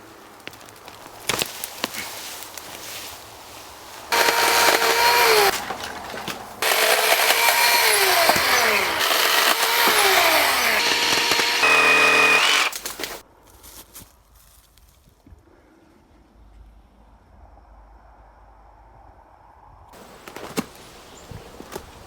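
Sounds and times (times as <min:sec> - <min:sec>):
power saw cutting branches: 0:04.1 - 0:13.2.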